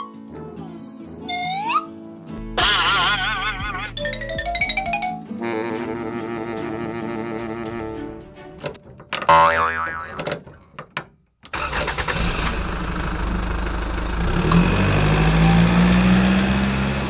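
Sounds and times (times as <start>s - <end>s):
vehicle engine starting and running: 11.5s - 17.0s.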